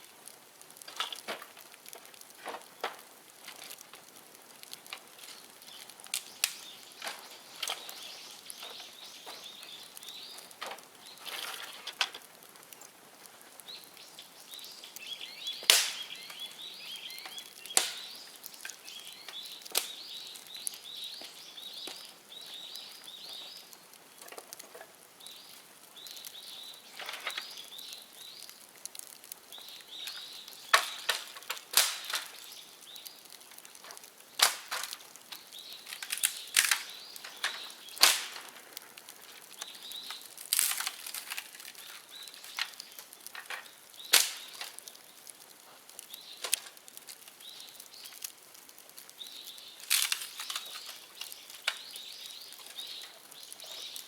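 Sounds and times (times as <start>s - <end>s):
bamboo fire popping: 0.0s - 54.0s
bird chirping: 5.7s - 11.4s, 13.6s - 23.7s, 29.5s - 31.2s, 35.4s - 38.0s, 39.5s - 40.3s, 49.2s - 54.0s.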